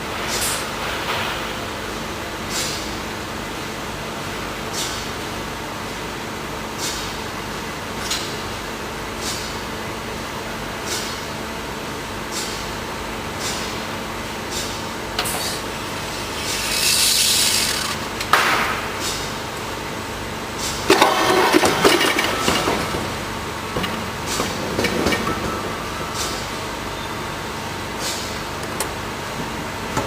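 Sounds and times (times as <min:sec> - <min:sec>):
hiss: 0:15.4 - 0:18.0.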